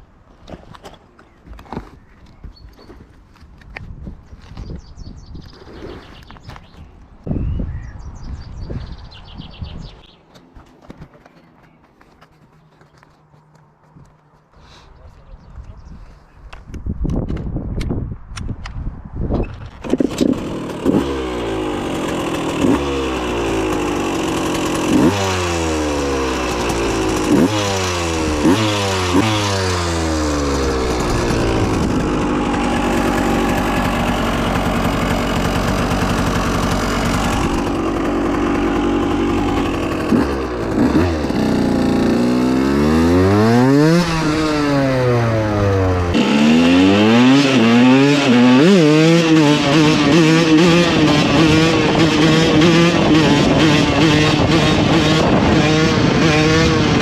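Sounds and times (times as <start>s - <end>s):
two-stroke engine revving: 19.8s - 57.0s.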